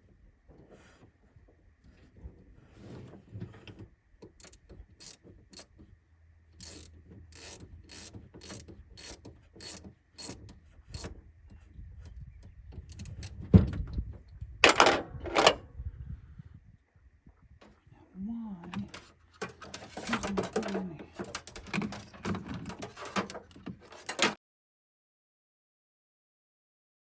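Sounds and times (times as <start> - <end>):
ratchet clicking: 4.4 - 5.8, 6.6 - 11.1
loud rasping noises: 6.6 - 11.2, 18.4 - 24.3.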